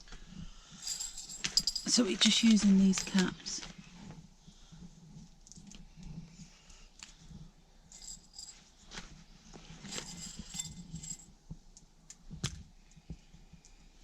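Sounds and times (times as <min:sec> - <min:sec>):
hardware clicking and clinking: 0:00.8 - 0:03.4
hardware jingling: 0:00.8 - 0:03.5, 0:07.9 - 0:08.6, 0:09.8 - 0:11.3.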